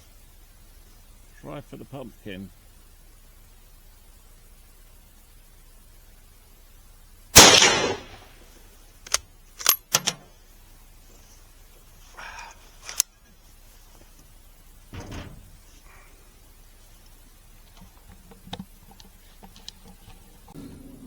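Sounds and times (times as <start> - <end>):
metallic clicks of rifle bolt: 7.4 - 8.3, 9.0 - 10.3, 12.8 - 13.1
rifle shot: 7.4 - 8.4, 9.1 - 10.2.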